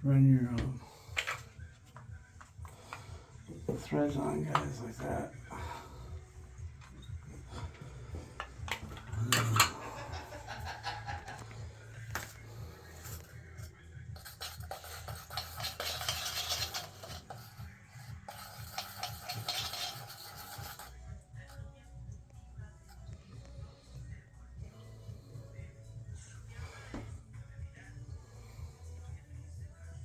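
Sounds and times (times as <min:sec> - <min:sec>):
metal scraping: 0:14.2 - 0:20.9.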